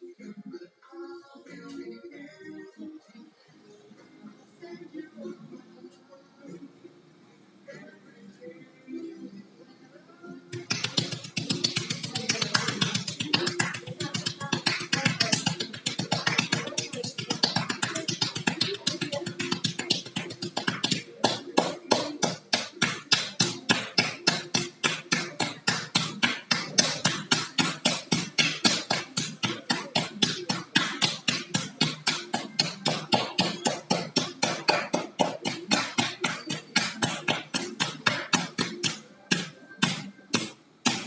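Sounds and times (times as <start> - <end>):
hands patting a back: 10.6 - 41.0.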